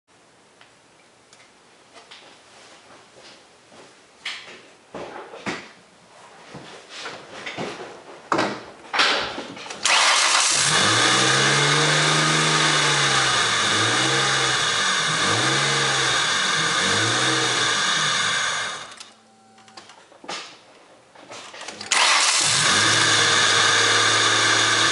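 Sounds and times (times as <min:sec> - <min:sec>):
car engine revving: 0:09.8 - 0:19.0, 0:21.8 - 0:24.9.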